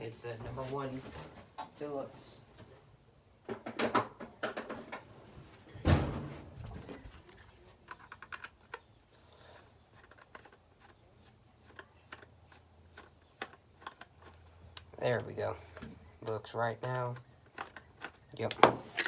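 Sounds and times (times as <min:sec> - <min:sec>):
loud thud: 0:05.8 - 0:06.4
clicks and knocks of handling tools: 0:07.3 - 0:08.9, 0:11.6 - 0:16.0, 0:16.8 - 0:19.0.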